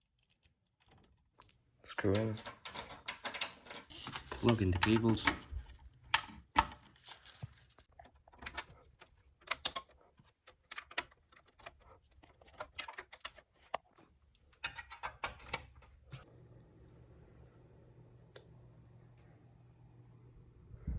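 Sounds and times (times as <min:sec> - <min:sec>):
clicks and rattles of computer parts: 0:02.0 - 0:16.2.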